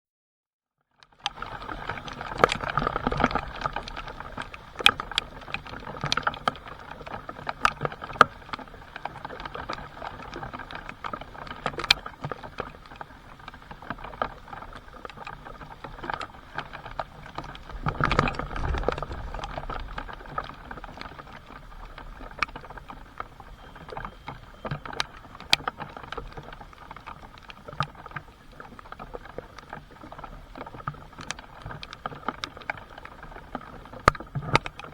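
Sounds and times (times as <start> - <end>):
rain falling: 1.5 - 28.2.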